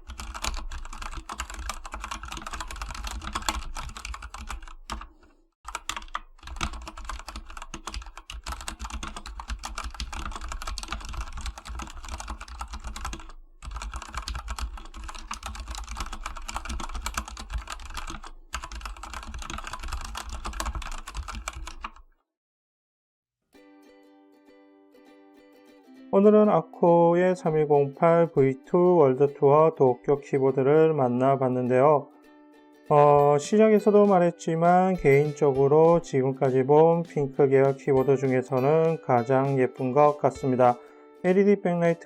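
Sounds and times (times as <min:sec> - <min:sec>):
fast mechanical keyboard typing: 0:00.0 - 0:05.1, 0:05.7 - 0:22.0.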